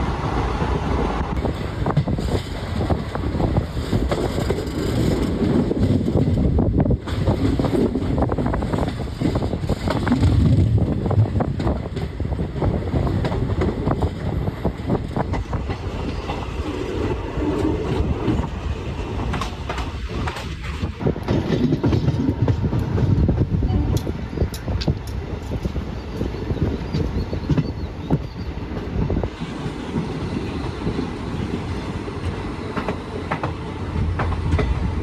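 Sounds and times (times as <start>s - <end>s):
train rumbling at speed: 0.0s - 35.0s
wheels clattering over rail joints: 13.1s - 23.2s.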